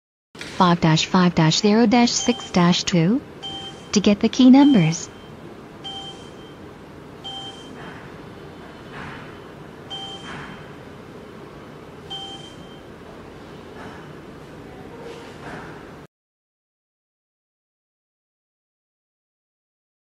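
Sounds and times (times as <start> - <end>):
low background hum: 0.4 - 16.1
short electronic beeps: 2.1 - 2.8, 3.4 - 6.6, 7.2 - 7.8, 9.9 - 10.7, 12.1 - 12.9.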